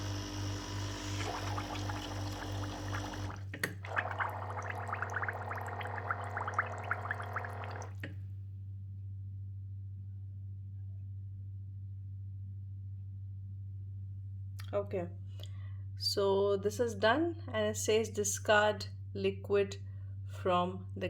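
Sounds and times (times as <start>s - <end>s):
coffee machine pump running: 0.0s - 8.1s
hot water sputtering: 0.0s - 8.1s
low steady hum: 0.0s - 21.0s.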